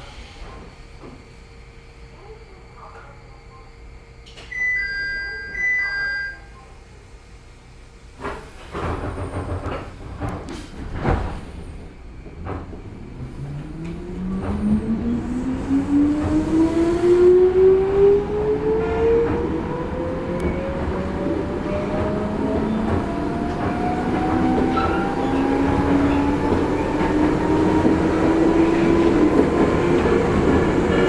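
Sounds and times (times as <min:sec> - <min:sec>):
train rumbling and clattering: 0:00.0 - 0:04.6, 0:06.8 - 0:31.0.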